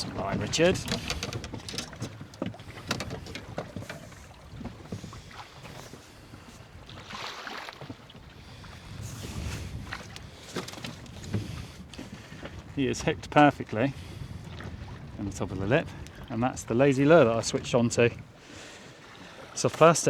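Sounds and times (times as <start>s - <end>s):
light knocks and rattles: 0.0s - 5.8s, 9.9s - 11.7s
water around boat: 0.0s - 20.0s
wind: 0.0s - 20.0s.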